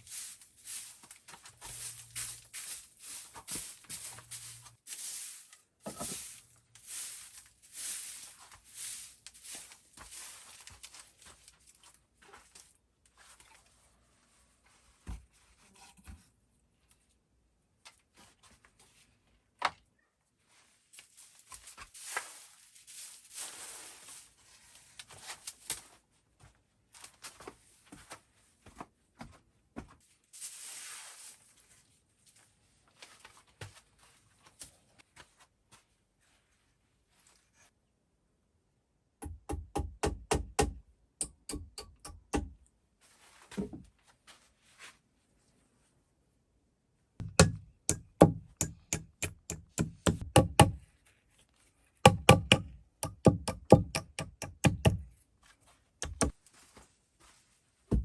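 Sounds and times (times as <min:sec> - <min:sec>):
rustling and scraping: 0:00.0 - 0:16.4, 0:20.4 - 0:26.0, 0:30.4 - 0:37.8, 0:43.0 - 0:46.0, 0:55.3 - 0:58.0.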